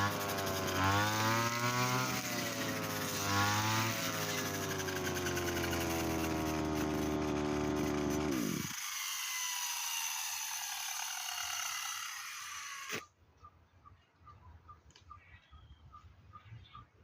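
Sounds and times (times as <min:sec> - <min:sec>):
brush cutter head whirring down: 0:00.0 - 0:13.1
brush cutter click: 0:12.7 - 0:13.1.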